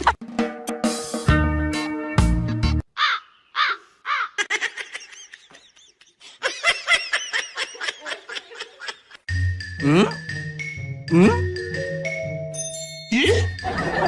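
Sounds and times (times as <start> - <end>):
music: 0.0 - 2.8, 9.3 - 14.0.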